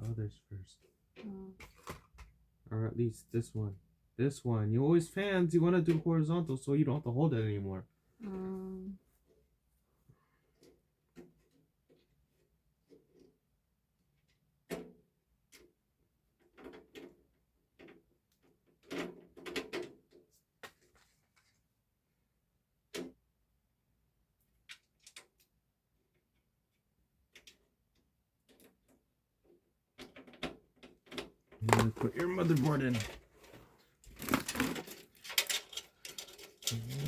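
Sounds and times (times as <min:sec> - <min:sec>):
clicks and knocks of screws: 0:34.2 - 0:36.9.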